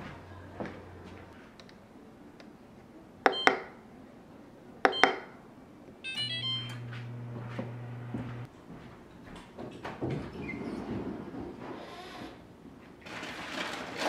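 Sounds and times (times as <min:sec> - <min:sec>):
short beeps: 0:03.3 - 0:03.7, 0:04.9 - 0:05.3, 0:06.0 - 0:08.1
electronic beep tones: 0:06.0 - 0:06.9
appliance humming: 0:06.0 - 0:08.5
control panel button clicks: 0:06.1 - 0:06.9.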